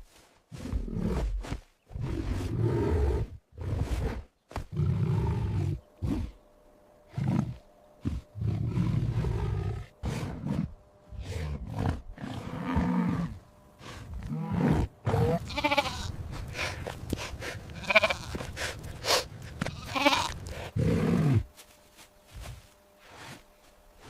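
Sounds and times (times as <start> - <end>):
big cat growling roars: 7.1 - 15.6
sheep bleating: 15.1 - 16.2, 17.8 - 18.5, 19.6 - 20.6.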